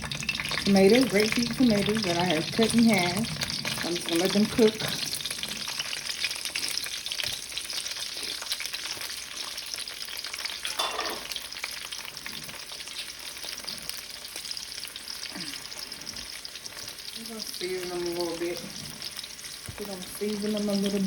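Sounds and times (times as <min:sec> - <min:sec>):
tomatoes sizzling in a hot pan: 0:00.0 - 0:21.0.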